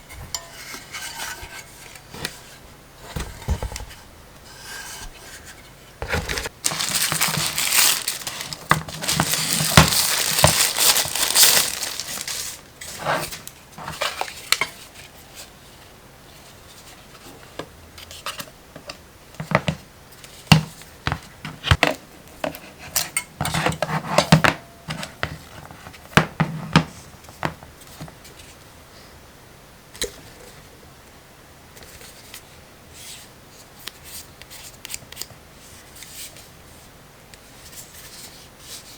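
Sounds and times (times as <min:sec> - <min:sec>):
crinkling and rustling: 0:05.2 - 0:15.5.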